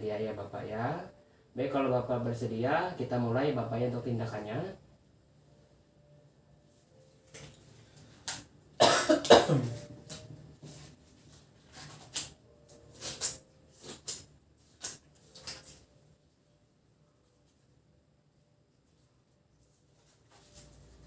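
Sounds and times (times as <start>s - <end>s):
person coughing: 8.8s - 9.8s.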